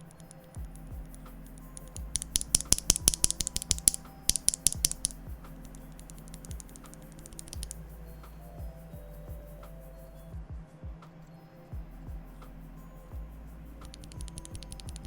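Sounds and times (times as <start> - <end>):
mechanical keyboard typing: 2.1 - 5.2, 13.9 - 15.0.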